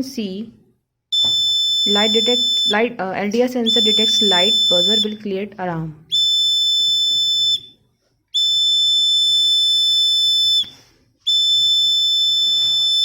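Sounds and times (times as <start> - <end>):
high-pitched electronic buzzer: 1.2 - 2.8, 3.7 - 5.2.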